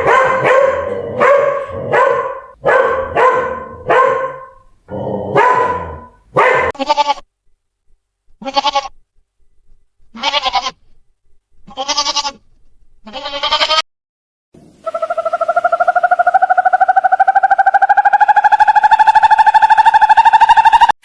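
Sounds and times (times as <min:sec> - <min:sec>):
long pulsing rising animal call: 0:00.0 - 0:06.7, 0:14.8 - 0:21.0
goat or sheep bleating: 0:06.8 - 0:07.3, 0:08.4 - 0:09.0, 0:10.1 - 0:10.8, 0:11.6 - 0:12.4, 0:13.0 - 0:13.8.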